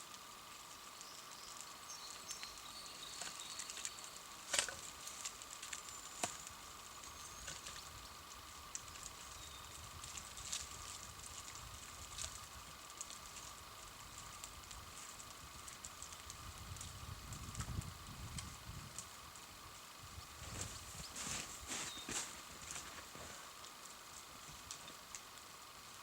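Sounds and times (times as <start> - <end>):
campfire crackling: 0.0 - 26.0.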